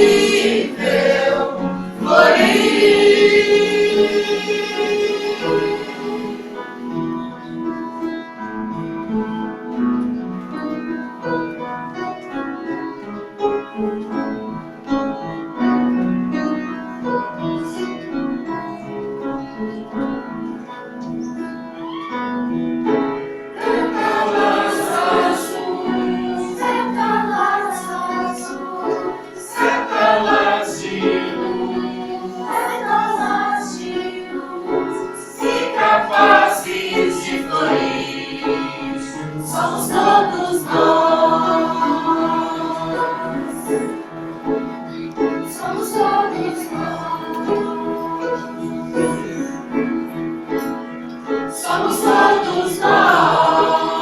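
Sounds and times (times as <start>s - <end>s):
choir singing: 0.0s - 7.5s, 23.5s - 54.0s
instrumental accompaniment: 0.0s - 54.0s.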